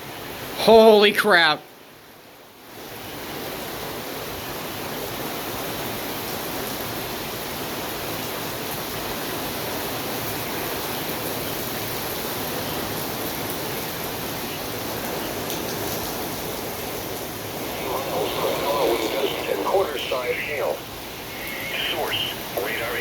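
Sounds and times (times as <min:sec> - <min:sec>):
heavy rain hissing: 0:13.8 - 0:23.0.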